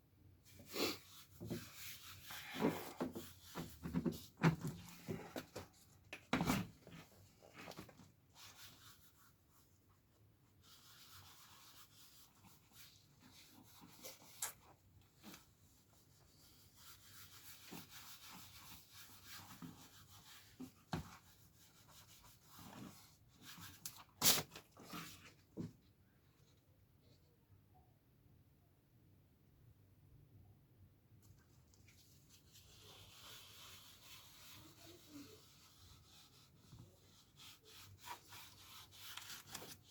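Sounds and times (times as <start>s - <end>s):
soft rubbing on plastic: 0.4s - 27.4s, 31.2s - 39.9s.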